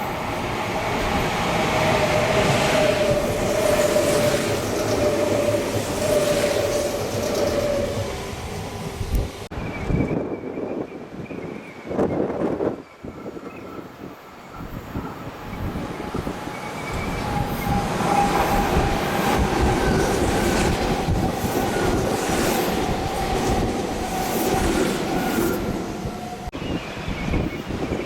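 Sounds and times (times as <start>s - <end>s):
electric train whining: 0.0s - 9.9s, 12.2s - 26.5s
train wheels rumbling on rails: 0.0s - 10.3s, 12.0s - 26.6s.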